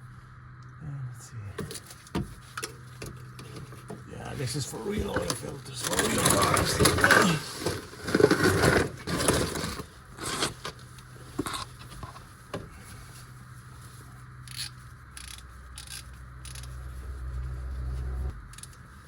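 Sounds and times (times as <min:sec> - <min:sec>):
low steady rumble: 0:00.0 - 0:19.0
metal scraping: 0:02.7 - 0:10.8.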